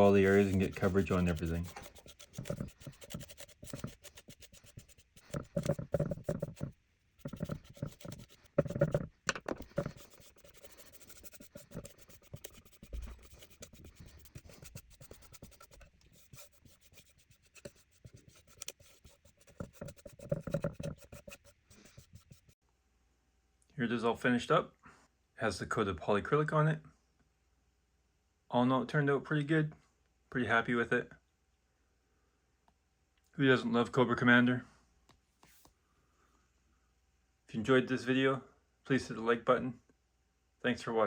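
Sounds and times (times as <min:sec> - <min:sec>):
paintbrush bristles rubbing on wood: 0:00.0 - 0:22.6.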